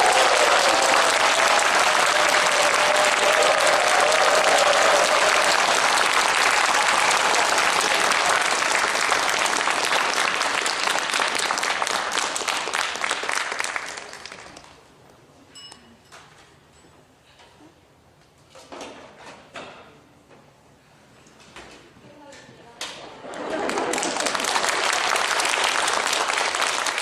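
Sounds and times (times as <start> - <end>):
audience applauding: 0.0 - 14.8, 23.3 - 27.0.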